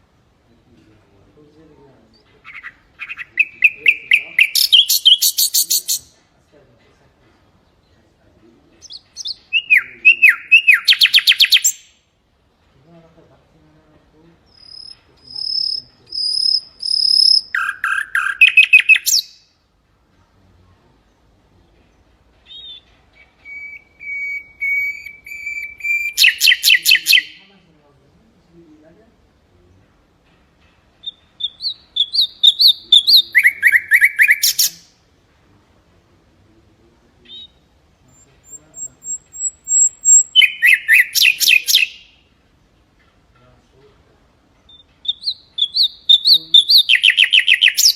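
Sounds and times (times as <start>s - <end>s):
bird singing whistled notes: 2.5s - 6.1s, 8.8s - 12.0s, 14.5s - 19.6s, 22.5s - 27.5s, 31.0s - 34.9s, 37.2s - 42.2s, 44.6s - 47.9s.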